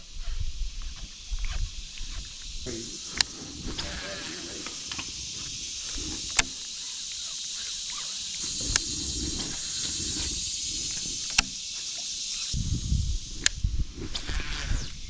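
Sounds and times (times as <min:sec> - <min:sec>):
insects chirring: 0:00.0 - 0:15.0
sharp clicks: 0:00.8 - 0:12.6.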